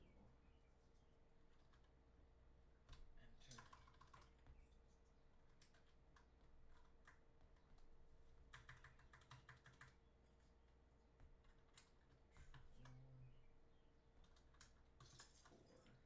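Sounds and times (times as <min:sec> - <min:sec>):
mechanical keyboard typing: 0:02.9 - 0:04.5, 0:05.5 - 0:10.0, 0:11.2 - 0:13.0, 0:14.2 - 0:15.7.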